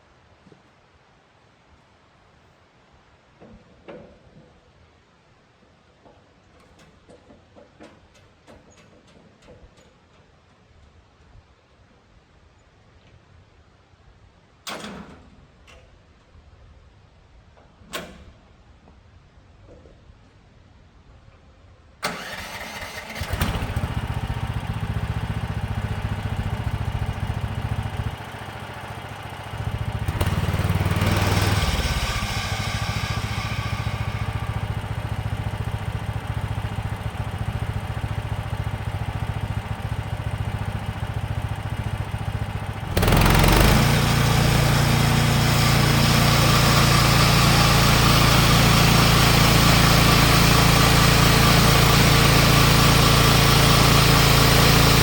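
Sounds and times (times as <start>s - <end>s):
small gasoline engine running: 22.0s - 55.0s.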